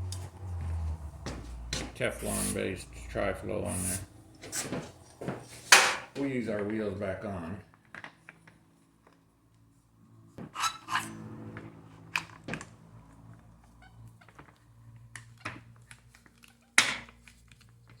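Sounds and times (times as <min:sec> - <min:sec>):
steady low hum: 0:00.0 - 0:06.2.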